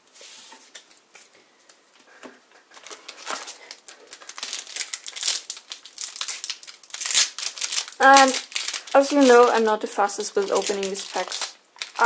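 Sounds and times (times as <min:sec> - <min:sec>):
foil wrapper crinkling: 0:02.7 - 0:12.0
plastic wrapping crinkling: 0:02.7 - 0:12.0.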